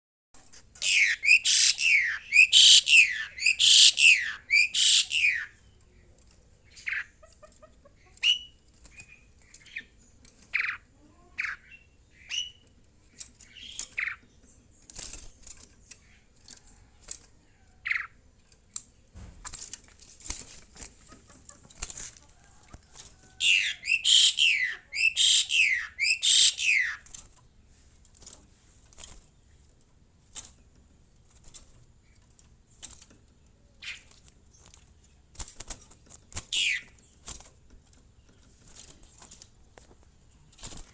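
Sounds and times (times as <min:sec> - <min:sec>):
short bird calls and clicks: 0:00.4 - 0:19.1, 0:20.3 - 0:27.5, 0:31.4 - 0:40.9.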